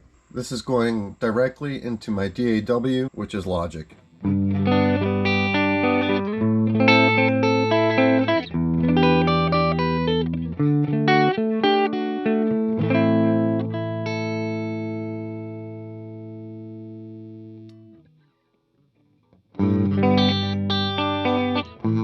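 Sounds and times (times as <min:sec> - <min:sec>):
electric guitar strumming chords: 0:04.2 - 0:18.2, 0:19.5 - 0:22.0.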